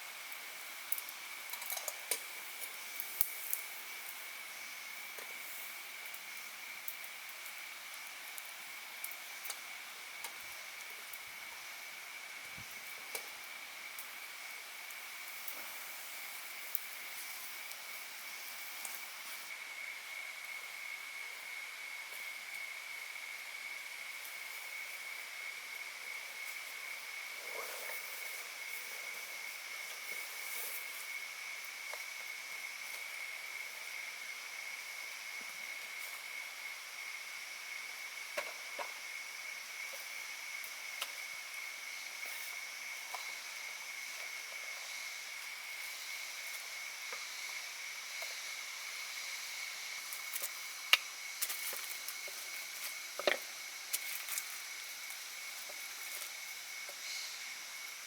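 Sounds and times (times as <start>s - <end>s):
faint hiss: 0.0s - 58.0s
insect trilling: 24.4s - 58.0s.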